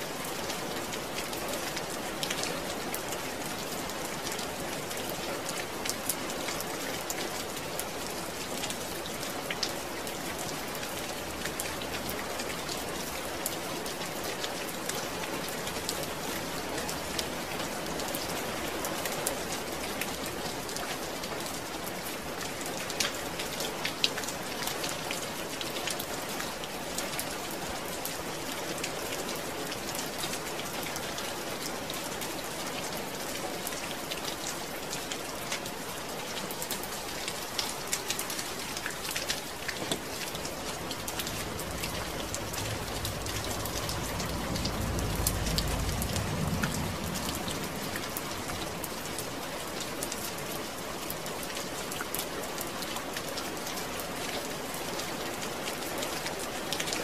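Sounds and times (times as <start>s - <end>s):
steady rain pattering: 0.0s - 57.0s
low rumble: 40.4s - 49.2s.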